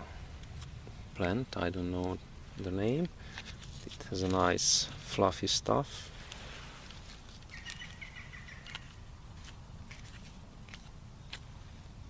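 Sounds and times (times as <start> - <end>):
dry plant tinder clicking: 6.3 - 11.5.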